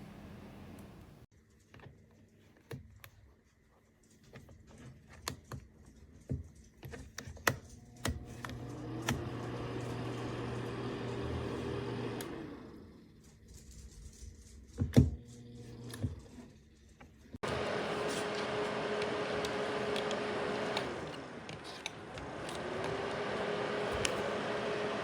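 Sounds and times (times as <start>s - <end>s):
heater fan whine and hum: 0.0s - 1.3s, 7.4s - 25.0s
heater being handled: 17.4s - 25.0s
heater switch clicking: 18.2s - 25.0s.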